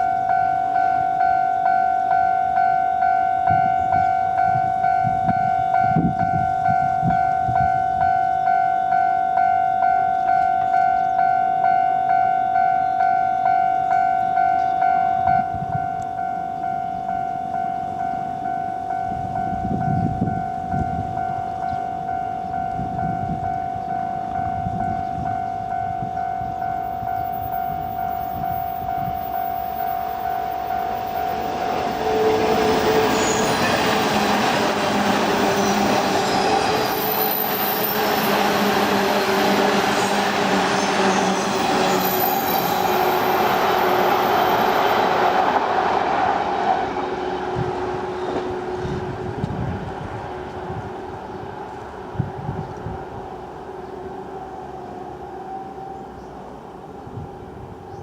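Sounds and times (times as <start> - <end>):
level crossing bell ringing: 0.0 - 34.1
train passing on rails: 0.0 - 58.0.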